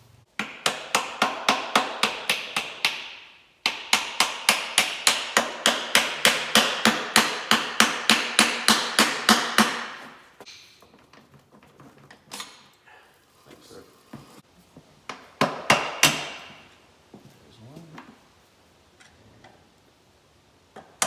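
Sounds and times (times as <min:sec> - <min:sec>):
hammer striking: 0:00.4 - 0:10.2.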